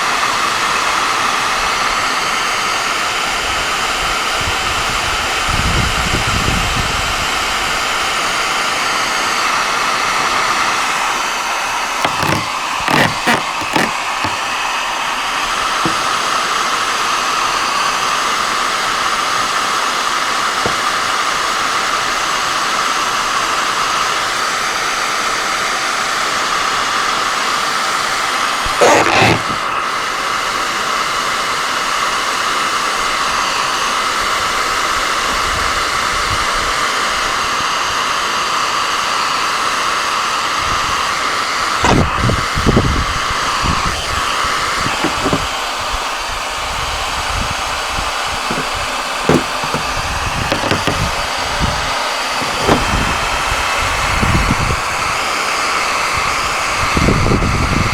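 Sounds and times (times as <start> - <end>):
short sharp knocks: 12.0 - 14.4, 28.7 - 29.6, 44.9 - 45.5, 48.5 - 51.2, 52.4 - 53.0.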